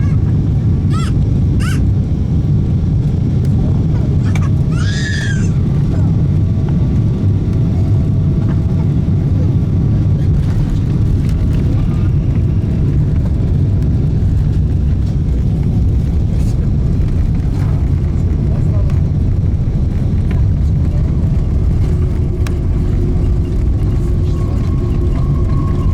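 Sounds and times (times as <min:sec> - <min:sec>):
airplane cabin engine rumble: 0:00.0 - 0:25.9.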